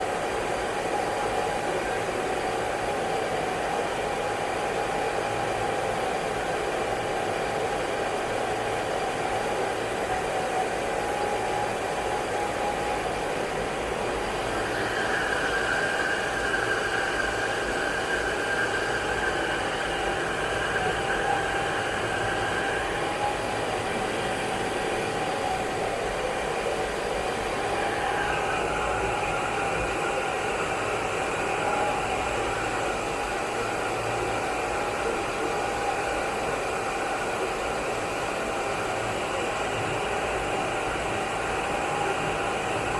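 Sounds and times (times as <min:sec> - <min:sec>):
cooling fans whirring: 0:00.0 - 0:42.9.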